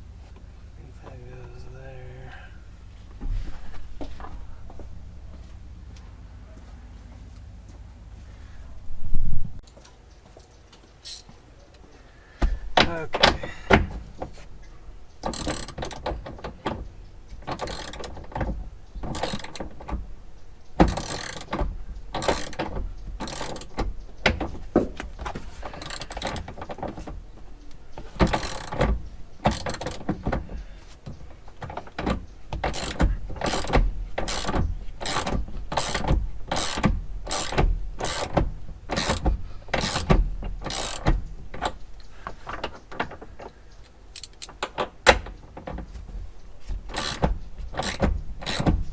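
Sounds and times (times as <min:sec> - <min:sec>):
ratcheting metal clicks: 0:12.6 - 0:48.9.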